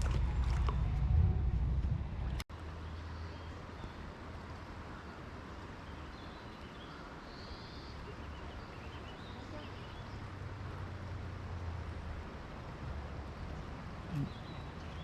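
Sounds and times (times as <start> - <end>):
low rumble: 0.0 - 2.5
creek water over rapids: 2.6 - 15.0.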